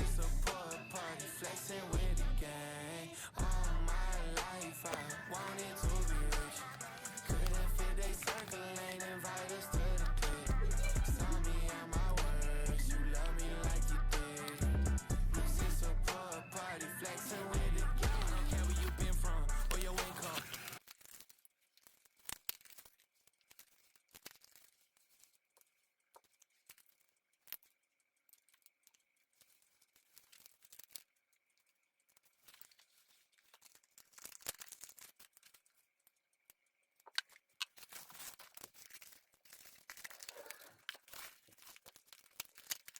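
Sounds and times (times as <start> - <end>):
packaging rustling: 4.5 - 5.8, 6.4 - 9.8, 19.7 - 42.9
packaging clicks and crinkling: 4.5 - 7.5, 8.1 - 9.8, 19.7 - 42.9.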